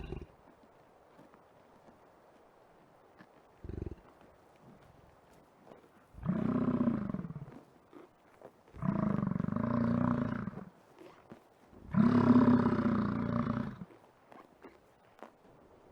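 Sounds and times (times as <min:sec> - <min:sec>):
bison bellowing: 0:00.0 - 0:00.3, 0:06.2 - 0:07.5, 0:11.9 - 0:13.9.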